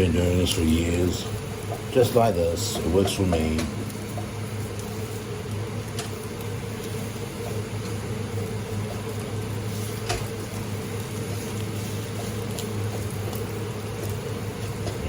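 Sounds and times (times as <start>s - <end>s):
kitchen appliance humming: 0.0s - 15.0s
utensil clicking against pan: 2.7s - 4.4s.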